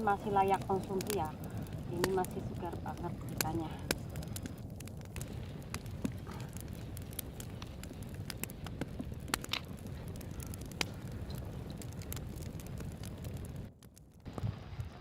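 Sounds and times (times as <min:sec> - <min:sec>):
campfire crackling and popping: 0:00.0 - 0:15.0.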